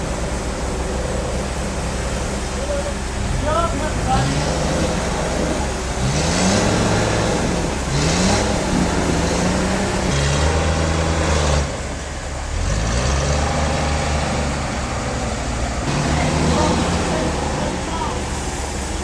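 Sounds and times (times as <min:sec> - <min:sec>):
hissing noise: 0:00.0 - 0:10.6, 0:15.8 - 0:19.0
engine revving: 0:00.0 - 0:19.0.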